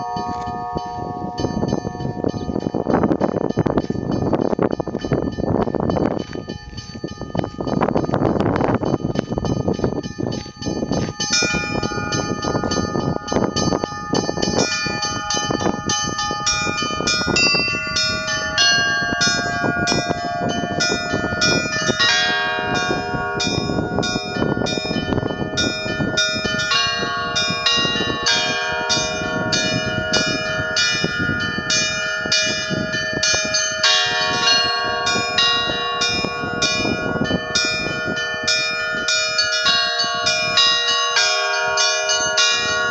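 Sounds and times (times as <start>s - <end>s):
large church bells ringing: 0.0s - 42.9s
small high bells chiming: 0.0s - 42.9s.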